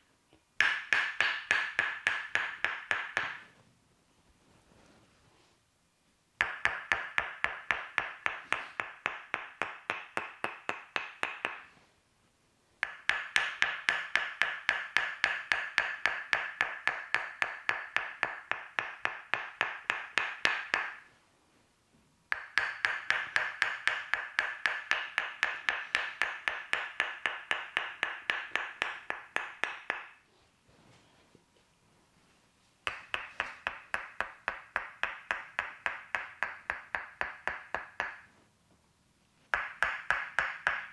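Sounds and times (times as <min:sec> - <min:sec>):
wooden mallet tapping wooden stick: 0:00.6 - 0:03.6, 0:06.4 - 0:11.8, 0:12.8 - 0:21.1, 0:22.3 - 0:30.2, 0:32.8 - 0:38.4, 0:39.5 - 0:40.9.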